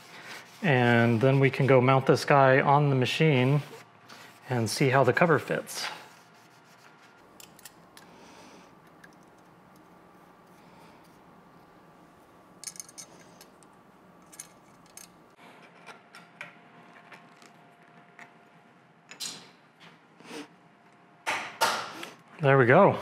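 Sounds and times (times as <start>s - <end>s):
small metal parts clinking: 12.6s - 15.2s.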